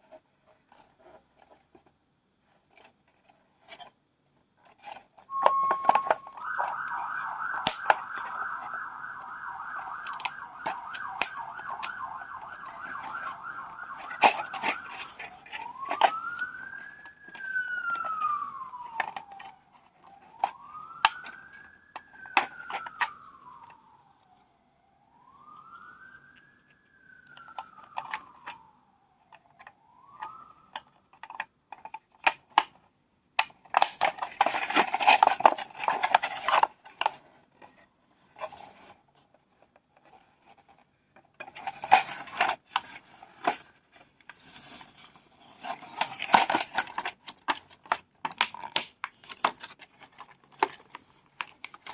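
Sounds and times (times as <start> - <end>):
packaging rustling and crinkling: 4.6 - 24.0, 33.6 - 51.9
plastic clicks: 4.7 - 23.8, 27.2 - 28.6, 29.3 - 32.8, 33.4 - 37.7, 45.5 - 51.9
siren-like wailing tone: 5.3 - 30.9.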